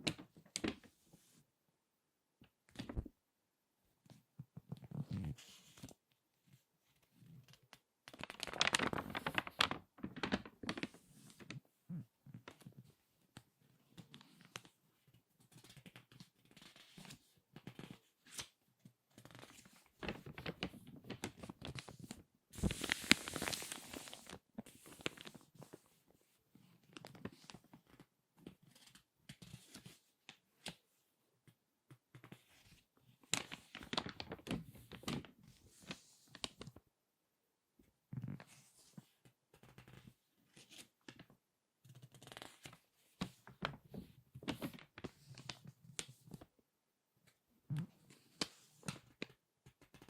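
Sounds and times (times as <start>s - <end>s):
magazine pages crackling and rustling: 7.5s - 11.5s, 19.2s - 25.8s, 32.2s - 36.6s, 39.7s - 41.3s, 41.9s - 46.4s.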